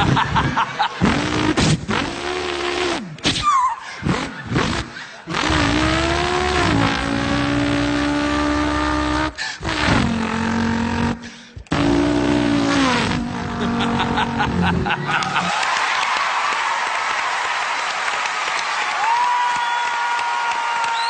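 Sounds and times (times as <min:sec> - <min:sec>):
man imitating car engine: 0:00.0 - 0:15.5.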